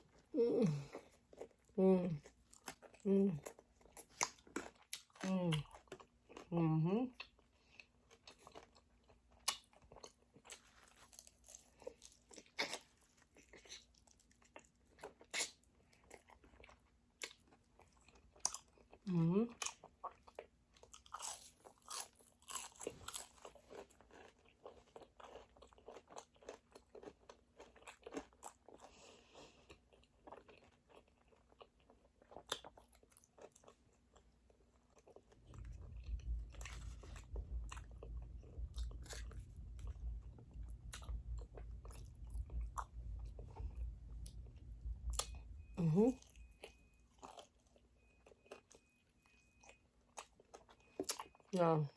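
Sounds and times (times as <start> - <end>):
chewing crispy chicken wings: 0.0 - 51.9
low rumble: 35.4 - 46.6.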